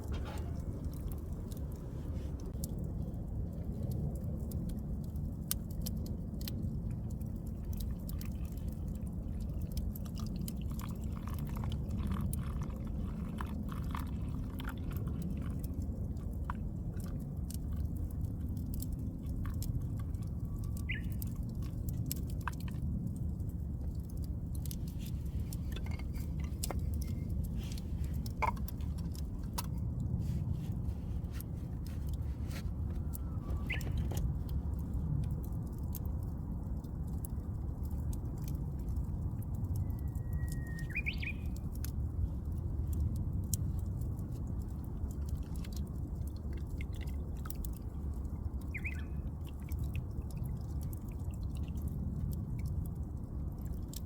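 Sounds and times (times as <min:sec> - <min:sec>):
wood campfire crackling: 0:00.0 - 0:48.8, 0:49.4 - 0:54.0.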